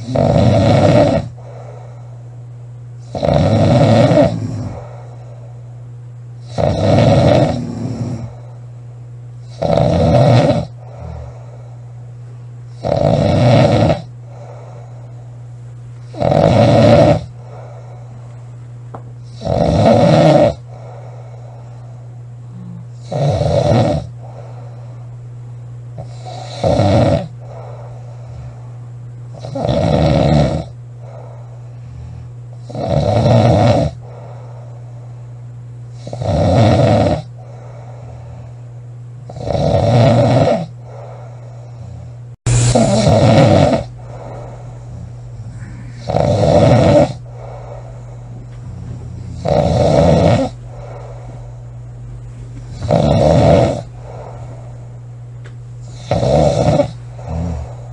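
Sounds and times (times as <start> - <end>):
woman snoring loudly: 0.0 - 1.8, 3.1 - 5.0, 6.4 - 8.3, 9.5 - 11.4, 12.8 - 14.6, 16.1 - 17.7, 19.2 - 21.2, 22.5 - 24.5, 26.0 - 28.5, 29.3 - 30.8, 32.0 - 34.1, 36.0 - 38.1, 39.3 - 51.5, 52.7 - 54.9, 55.8 - 57.9
steady low hum: 0.0 - 57.9.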